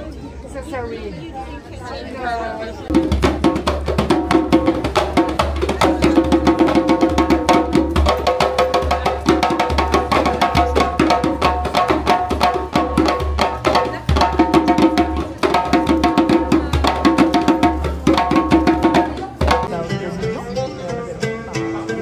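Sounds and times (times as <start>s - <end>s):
upbeat music with wood-block percussion: 2.9s - 19.7s.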